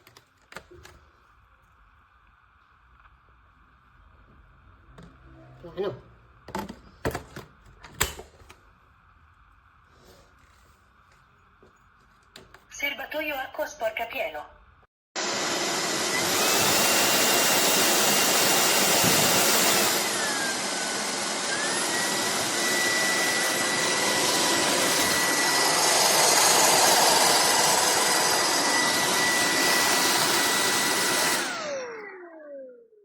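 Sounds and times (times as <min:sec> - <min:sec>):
vacuum cleaner motor whining: 0:15.2 - 0:33.0.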